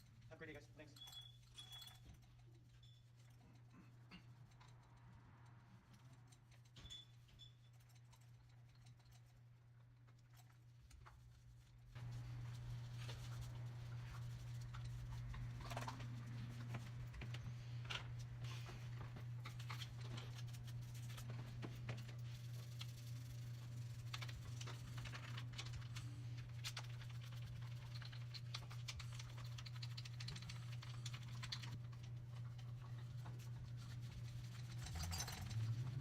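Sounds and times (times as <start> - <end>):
faint handling clicks and scrapes: 0.0 - 36.0
steady low hum: 8.2 - 36.0.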